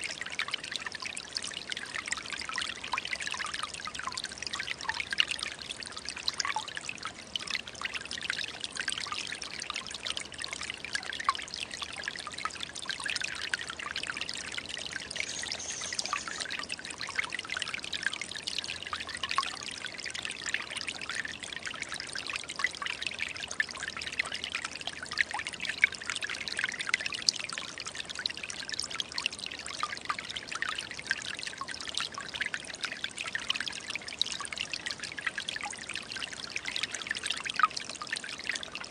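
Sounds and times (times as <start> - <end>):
stream trickling and babbling: 0.0 - 38.9.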